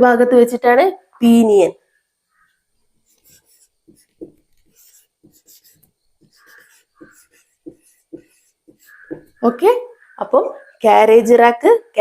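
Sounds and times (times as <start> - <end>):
pen scratching on paper: 3.0 - 9.4.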